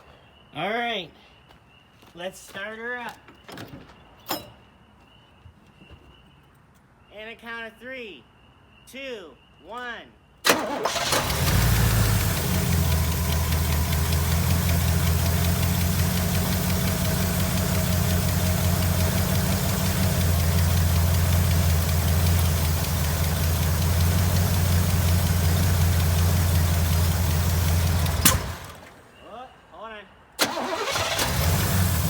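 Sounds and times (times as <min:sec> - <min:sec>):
car engine idling: 0:10.5 - 0:29.2, 0:30.4 - 0:32.0.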